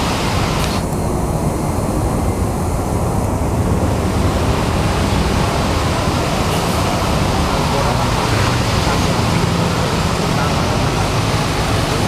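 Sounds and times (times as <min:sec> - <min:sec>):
bus engines rumbling: 0:00.0 - 0:12.0
rain hiss: 0:00.0 - 0:12.0.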